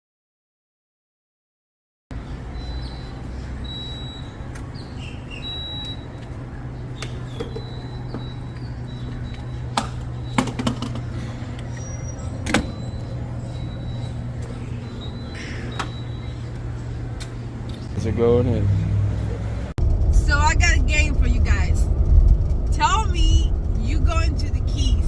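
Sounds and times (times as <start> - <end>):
small birds chirping: 2.2 - 10.4, 11.0 - 18.0.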